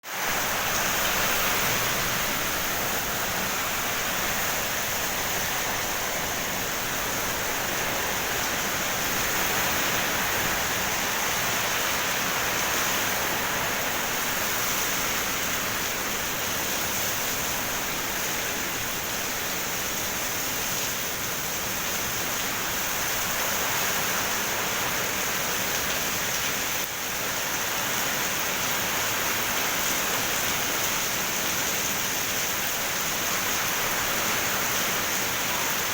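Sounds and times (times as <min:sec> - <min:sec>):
heavy rain pouring: 0:00.0 - 0:35.9.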